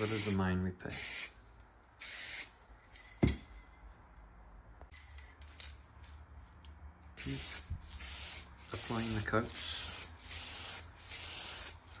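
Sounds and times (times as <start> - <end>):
aerosol can spraying: 0.0 - 1.4, 2.0 - 2.5, 7.2 - 12.0.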